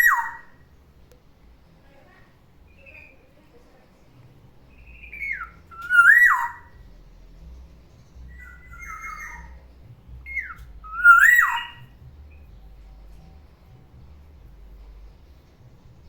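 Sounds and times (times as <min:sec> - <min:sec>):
bird fluting whistles: 0:04.8 - 0:06.7, 0:10.3 - 0:11.9
bird raspy call: 0:05.0 - 0:06.7, 0:08.4 - 0:09.6, 0:10.3 - 0:11.9.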